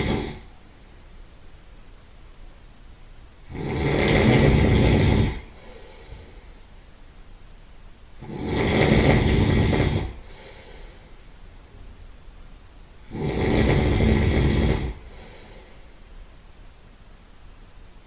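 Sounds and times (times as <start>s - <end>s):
person snoring loudly: 0.0s - 0.6s, 3.4s - 6.4s, 8.2s - 11.1s, 13.0s - 15.8s.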